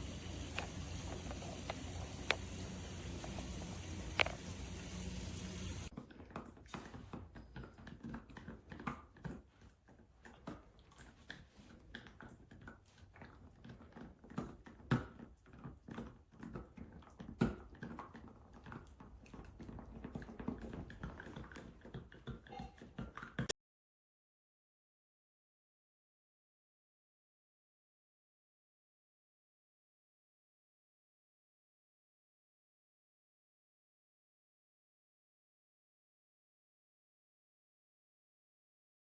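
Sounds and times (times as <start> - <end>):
dog gnawing chew bone: 0.0 - 23.5.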